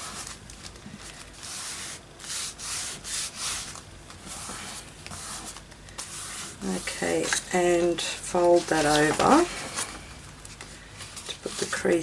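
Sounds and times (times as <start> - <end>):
scratchy rubbing on paper: 1.4 - 7.4.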